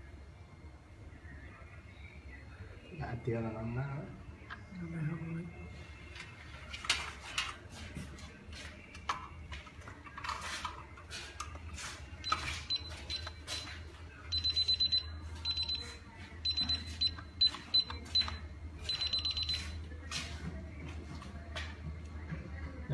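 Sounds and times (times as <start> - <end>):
fire alarm beeping: 12.2 - 19.9.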